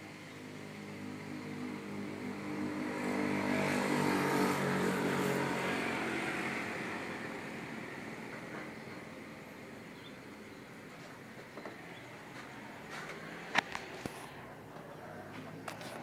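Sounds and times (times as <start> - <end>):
vehicle passing by: 0.5 - 9.6.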